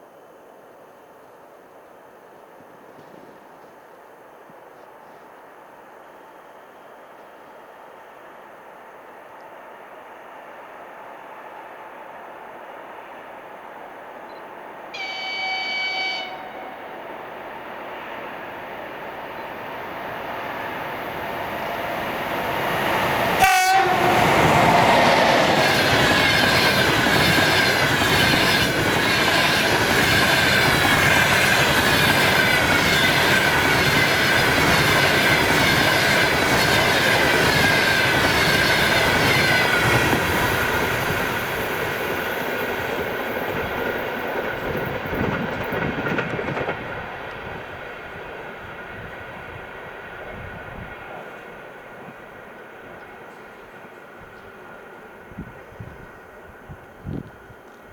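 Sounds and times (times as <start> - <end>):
electric locomotive passing: 0.0 - 57.9
train wheels clattering on rail joints: 22.7 - 47.6.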